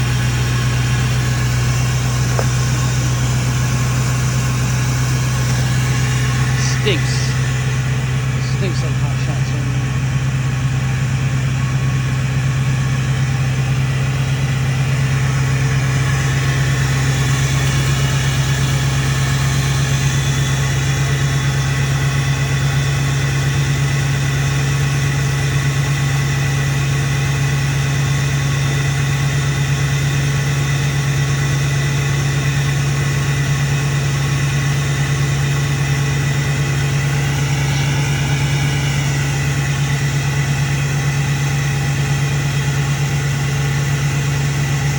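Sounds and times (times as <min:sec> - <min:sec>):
diesel engine idling: 0:00.0 - 0:44.9
turbocharger whistle: 0:35.1 - 0:44.9.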